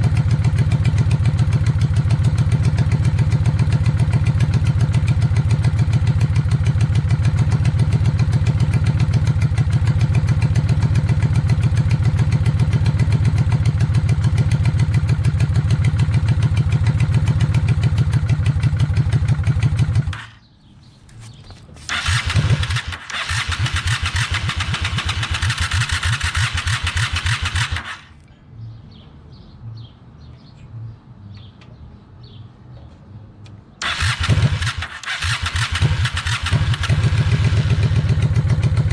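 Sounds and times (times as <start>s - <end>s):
motorcycle engine idling: 0.0s - 28.2s, 33.8s - 38.9s
engine turning over: 21.1s - 28.2s, 33.8s - 38.9s.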